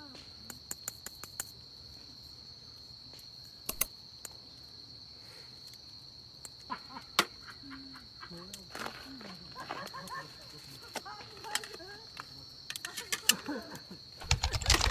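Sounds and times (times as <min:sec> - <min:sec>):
high-pitched insect trill: 0:00.0 - 0:14.9
sharp clicks: 0:14.2 - 0:14.9.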